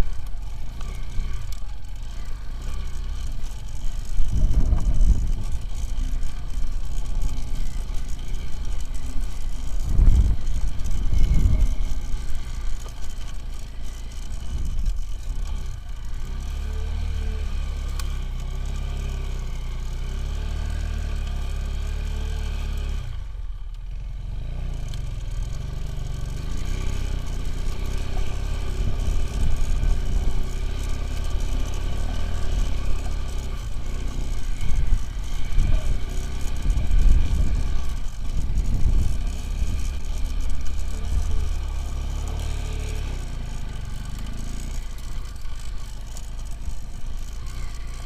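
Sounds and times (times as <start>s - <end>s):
motorcycle engine running: 0.0s - 48.0s
rattling and scraping: 3.2s - 7.5s.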